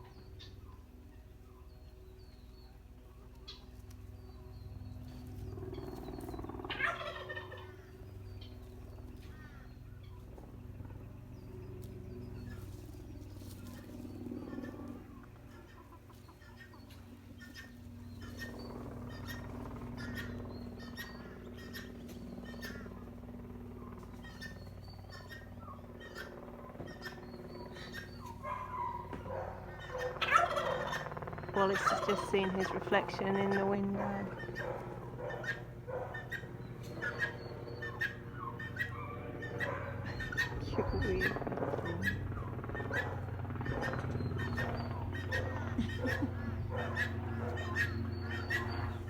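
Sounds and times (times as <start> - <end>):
chickens and guinea fowl chirping: 0.0 - 23.2, 23.8 - 49.0
turkey gobbling: 6.7 - 7.8, 14.5 - 23.0, 23.9 - 49.0.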